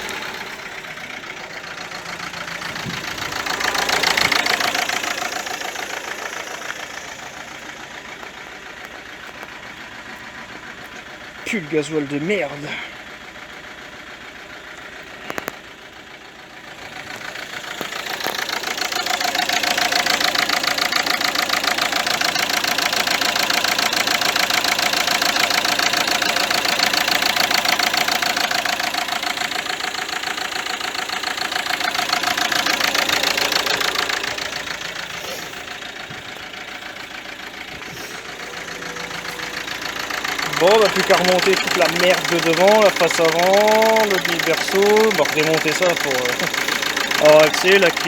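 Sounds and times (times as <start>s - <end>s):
diesel engine clattering knock: 0.0s - 48.0s.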